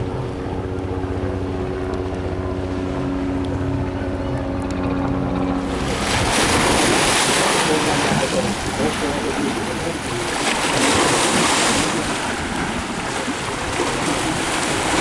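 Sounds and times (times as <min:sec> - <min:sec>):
motor engine running: 0:00.0 - 0:15.0
rush of wind or surf: 0:05.5 - 0:15.0.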